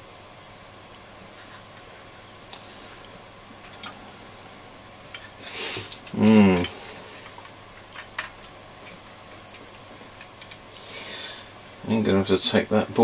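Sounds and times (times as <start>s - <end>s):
small parts and tools clicking: 5.1s - 10.6s.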